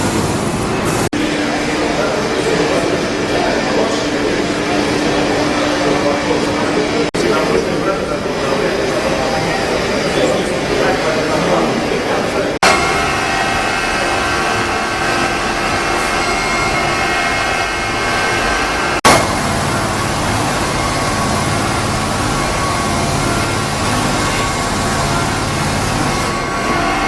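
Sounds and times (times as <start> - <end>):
high steady whines: 0.0 - 27.0
mechanical running noise: 12.6 - 27.0.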